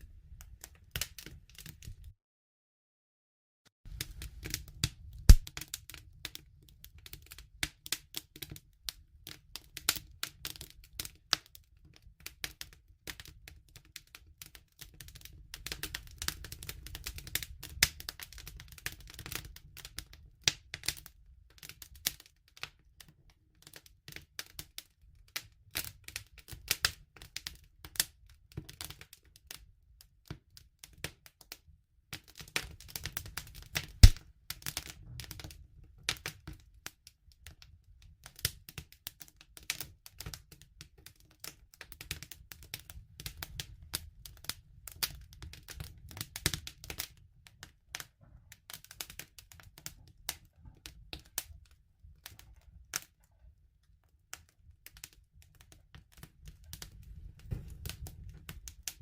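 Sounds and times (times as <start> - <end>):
campfire crackling and popping: 0.3 - 2.1, 3.9 - 22.7, 32.1 - 53.1, 54.3 - 59.0
low rumble of flame: 3.9 - 7.6, 32.8 - 36.8, 55.7 - 59.0.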